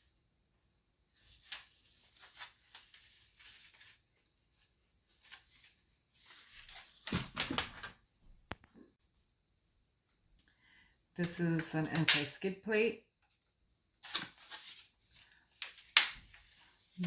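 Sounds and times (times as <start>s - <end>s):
plastic rustling and rubbing: 1.1s - 8.6s.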